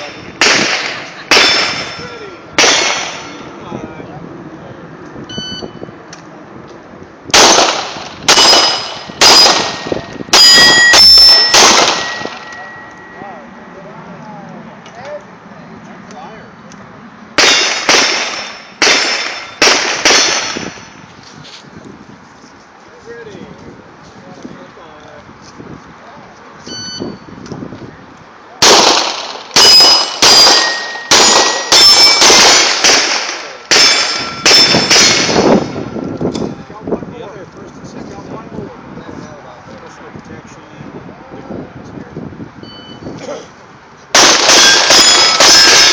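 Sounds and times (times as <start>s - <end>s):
pistol shots: 0.0s - 2.0s, 2.6s - 3.4s, 7.3s - 12.6s, 17.4s - 20.8s, 28.6s - 35.8s, 44.2s - 45.9s
steel target clanging: 0.0s - 3.5s, 8.3s - 13.3s, 17.4s - 21.0s, 29.6s - 36.5s, 44.4s - 45.9s
shot timer beep: 5.3s - 5.8s, 26.7s - 27.3s, 42.6s - 43.1s.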